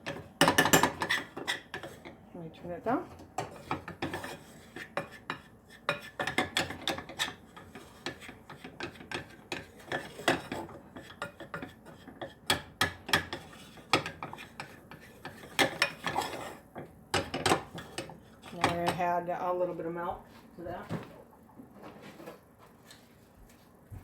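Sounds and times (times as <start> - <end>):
utensil scraping a pan: 0.0 - 2.2, 2.9 - 19.1.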